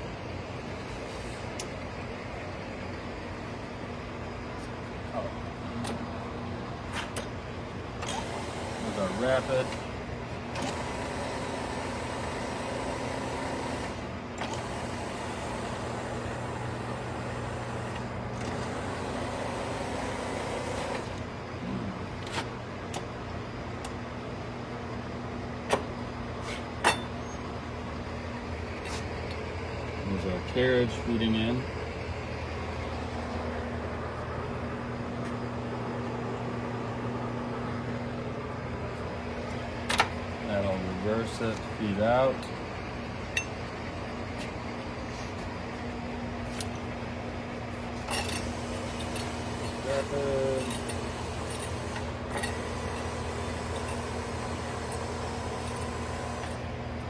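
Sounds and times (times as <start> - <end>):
high machine whine: 0.0 - 22.3, 26.9 - 57.0
lathe machine hum: 7.5 - 21.6, 47.1 - 57.0.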